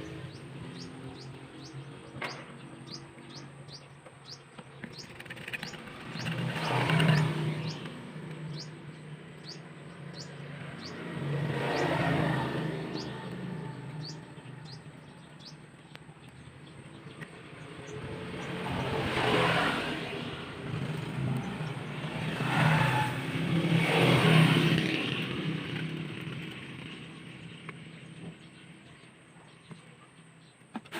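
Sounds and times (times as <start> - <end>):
bird chirping: 0.0 - 19.4
vehicles passing: 0.0 - 30.9.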